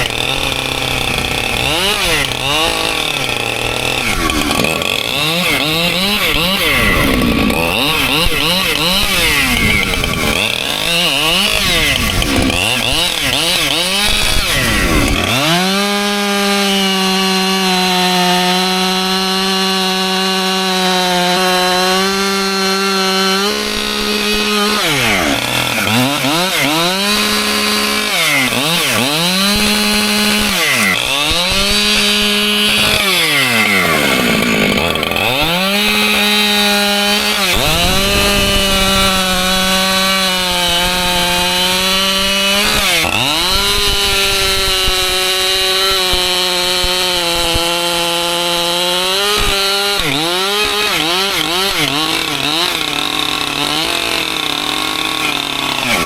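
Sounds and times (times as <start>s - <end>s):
chainsaw cutting logs: 0.0s - 56.0s.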